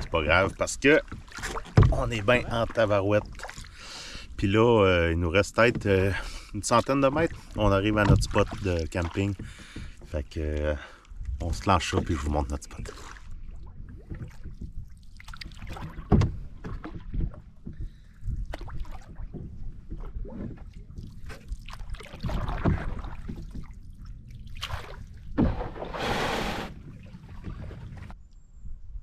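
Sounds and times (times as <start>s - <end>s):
paddle knocking against hull: 0.0s - 3.7s, 5.4s - 23.8s
paddle swishing in water: 0.0s - 4.5s, 5.4s - 28.2s.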